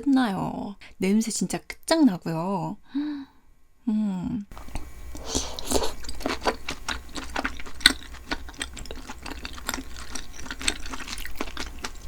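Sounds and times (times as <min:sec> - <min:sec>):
chewing with wet mouth clicks: 0:04.5 - 0:12.0.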